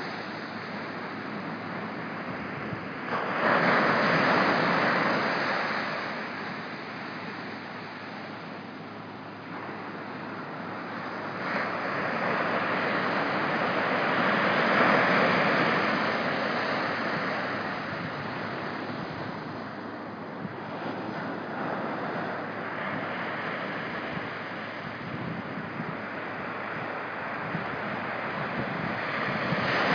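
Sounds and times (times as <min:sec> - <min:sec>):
small waves washing on beach: 0:00.0 - 0:29.9
wind on microphone: 0:09.5 - 0:29.9.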